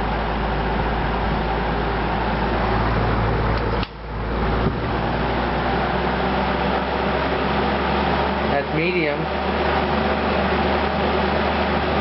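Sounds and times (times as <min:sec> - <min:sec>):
box fan running: 0:00.0 - 0:12.0
fan switch click: 0:03.5 - 0:04.8.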